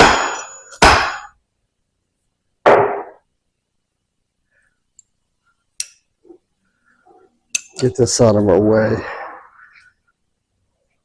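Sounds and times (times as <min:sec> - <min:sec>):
hammer striking metal: 0:00.0 - 0:01.4.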